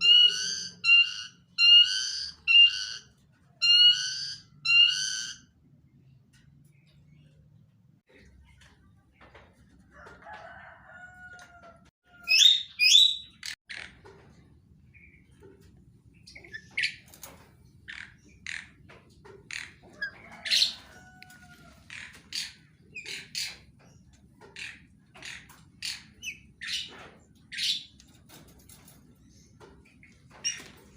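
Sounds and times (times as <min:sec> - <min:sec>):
birds chirping: 0:12.2 - 0:21.1.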